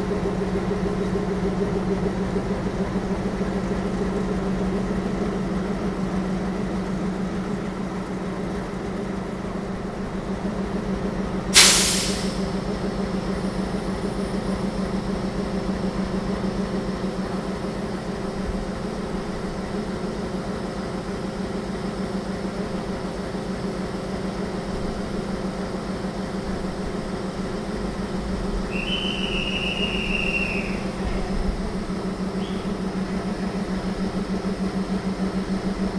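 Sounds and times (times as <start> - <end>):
electric train humming: 0.0 - 35.9
loud burst of hiss: 11.6 - 12.5.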